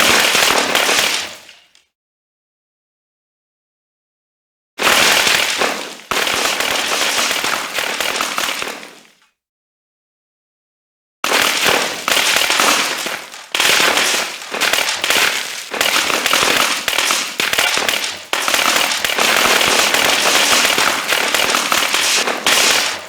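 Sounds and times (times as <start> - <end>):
rapid-fire gunshots: 11.3 - 23.0.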